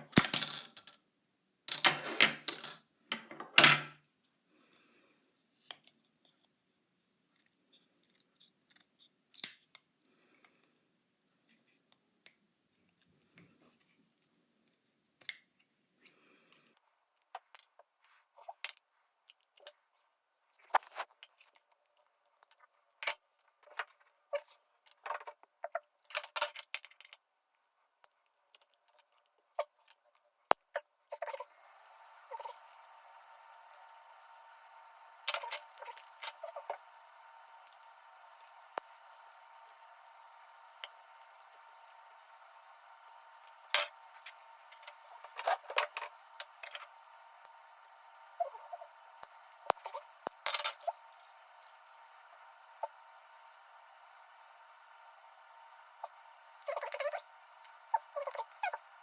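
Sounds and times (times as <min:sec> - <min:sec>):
hard objects clicking and clattering: 0:01.7 - 0:04.0.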